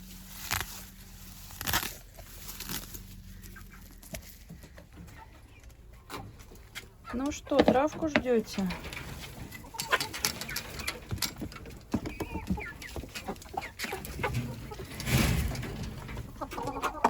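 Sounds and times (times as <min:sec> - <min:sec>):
poultry clucking and peeping: 0:00.0 - 0:17.0
rustling burst: 0:14.9 - 0:16.2.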